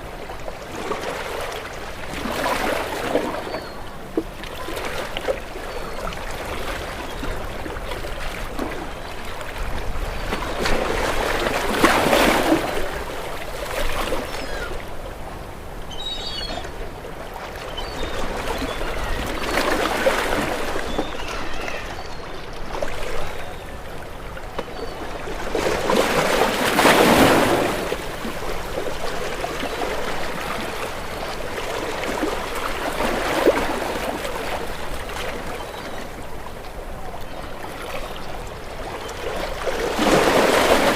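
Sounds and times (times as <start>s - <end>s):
waves crashing against rocks: 10.5s - 14.2s, 25.5s - 30.5s, 39.6s - 40.9s.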